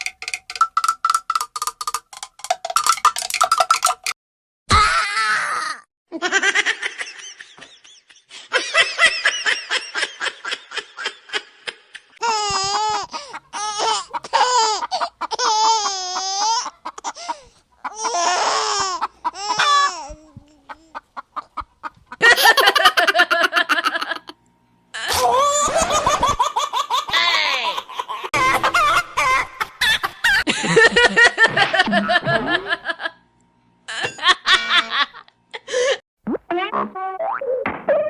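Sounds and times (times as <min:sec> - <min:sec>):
laughter clips: 0:06.2 - 0:15.3, 0:21.3 - 0:24.4, 0:25.1 - 0:33.2.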